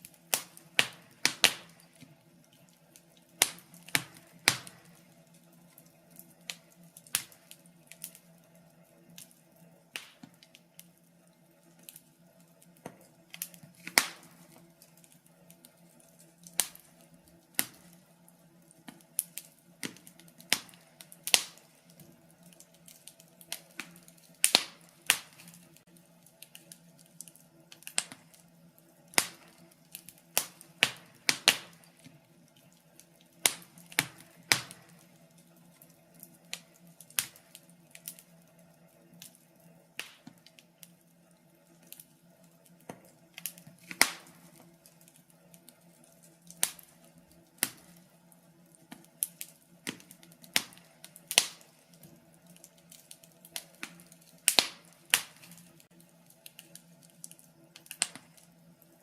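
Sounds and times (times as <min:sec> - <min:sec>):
wood fire crackling: 0:00.0 - 0:59.0.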